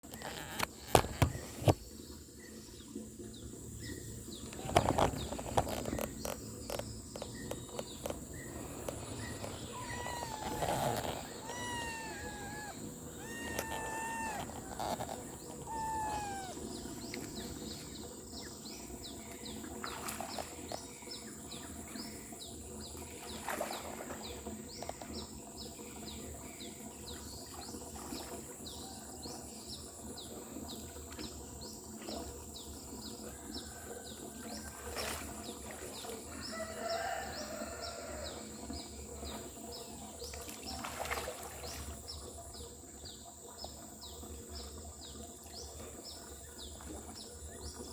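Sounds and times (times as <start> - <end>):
cat meowing: 9.6 - 16.8
high falling chirp: 9.7 - 14.9.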